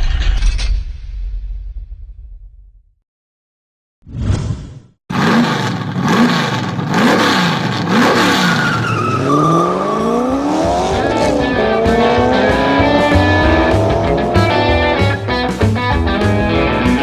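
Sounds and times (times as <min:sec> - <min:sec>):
car engine revving: 0:05.1 - 0:15.4.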